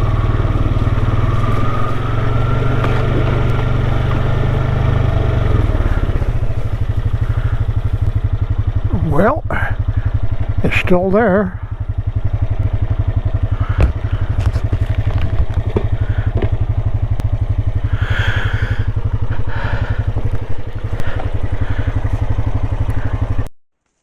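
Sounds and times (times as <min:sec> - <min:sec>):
small vehicle engine running: 0:00.0 - 0:23.5
scraping and clattering: 0:13.6 - 0:16.7.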